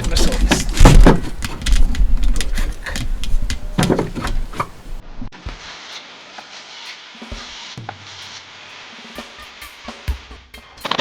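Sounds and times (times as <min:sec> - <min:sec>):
wooden boards knocking: 0:00.0 - 0:05.0.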